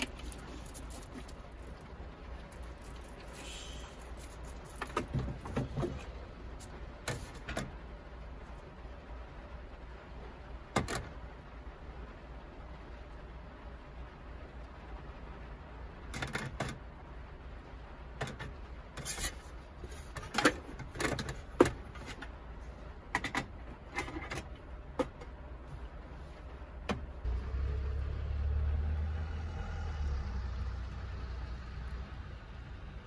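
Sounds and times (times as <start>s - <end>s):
vehicle engine starting and running: 14.8s - 33.0s
sharp clicks and knocks: 23.1s - 25.4s.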